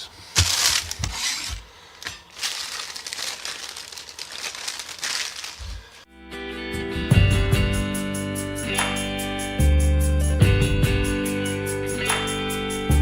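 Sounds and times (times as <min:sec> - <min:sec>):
packaging crinkling and rustling: 0:00.0 - 0:06.1
music: 0:06.1 - 0:13.0.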